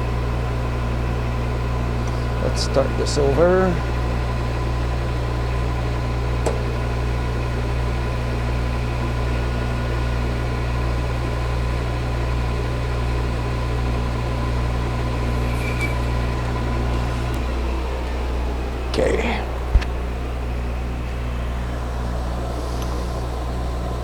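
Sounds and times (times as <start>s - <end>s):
metal lathe motor hum: 0.2s - 24.0s.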